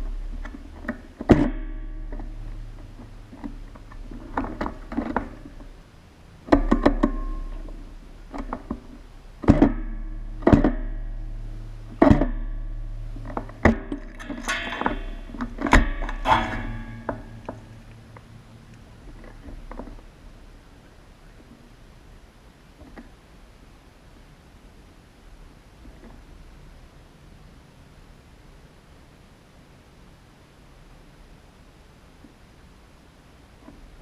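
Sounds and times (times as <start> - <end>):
plucked guitar notes and chords: 0.0 - 5.8, 9.4 - 19.9
steady low hum: 0.0 - 34.0.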